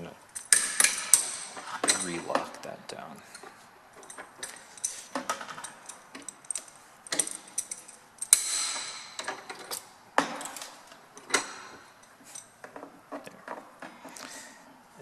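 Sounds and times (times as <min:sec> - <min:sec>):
sharp metallic clank: 0:00.0 - 0:02.7, 0:04.0 - 0:12.6
metal clicks and knocks: 0:00.4 - 0:02.7, 0:03.3 - 0:14.0.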